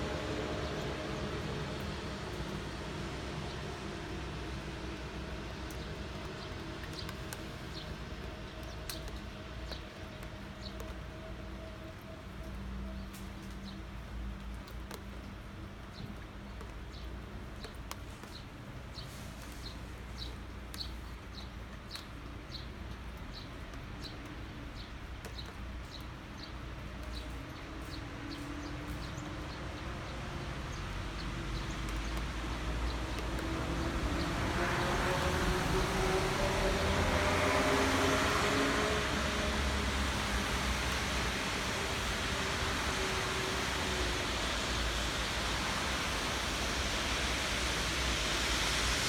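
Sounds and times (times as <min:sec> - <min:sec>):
rain: 0:00.0 - 0:49.0
vehicle approaching: 0:27.8 - 0:49.0.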